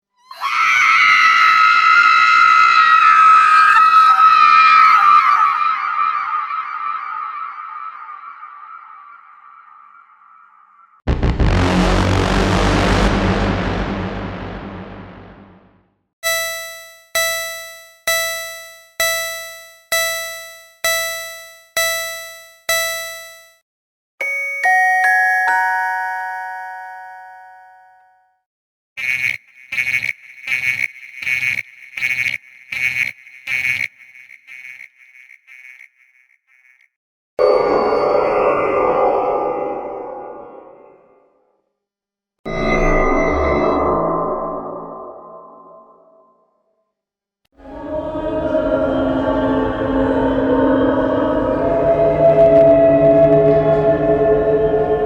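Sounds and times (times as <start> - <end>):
shrill scream-like shriek: 0.2 - 8.2
run of chime notes: 16.2 - 23.6, 24.2 - 28.3
bell-like chime tone: 24.2 - 28.3, 42.5 - 44.3.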